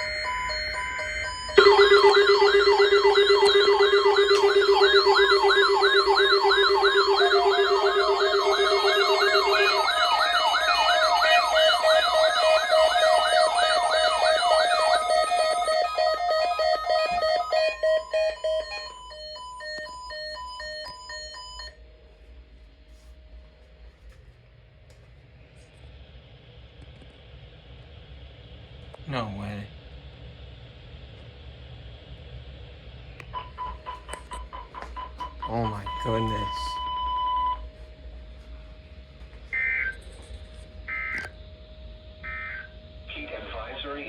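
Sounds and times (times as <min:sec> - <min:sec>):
fast warbling siren tone: 0:00.0 - 0:21.7, 0:40.8 - 0:41.3, 0:42.2 - 0:42.8
interrupted electronic beeping: 0:00.0 - 0:21.8, 0:33.4 - 0:37.6
steady low alarm tone: 0:00.0 - 0:44.0.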